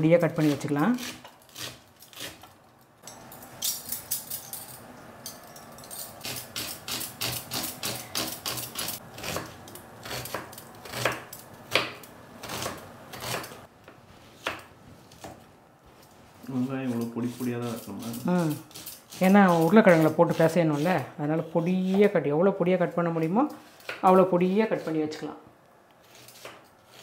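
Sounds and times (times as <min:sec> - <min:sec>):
knife chopping on cutting board: 0:07.2 - 0:13.6.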